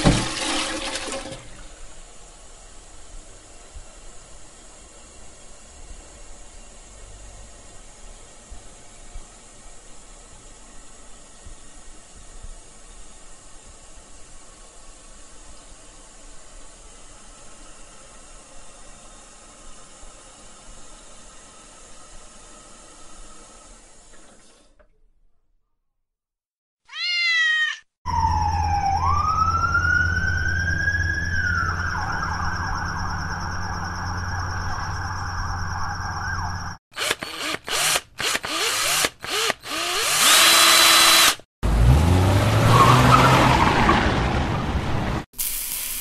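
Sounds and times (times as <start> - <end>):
cat meowing: 26.9 - 27.9
police siren: 28.1 - 36.8
drill bursts: 36.9 - 41.5
car engine revving: 41.6 - 45.0
hiss: 45.4 - 46.0.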